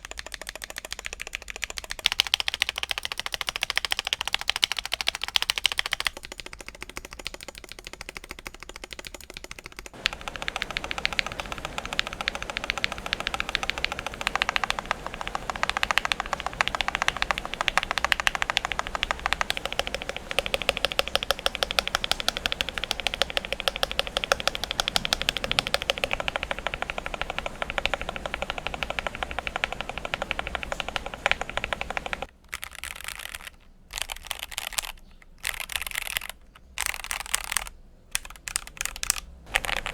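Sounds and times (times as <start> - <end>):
mechanical keyboard typing: 0.0 - 39.9.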